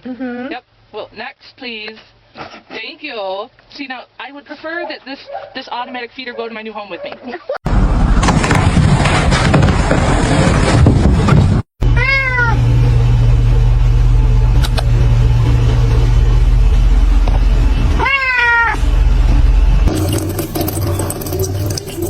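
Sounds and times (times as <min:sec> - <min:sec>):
cat meowing: 0:11.8 - 0:12.6, 0:18.0 - 0:18.8
steady low hum: 0:11.8 - 0:20.8.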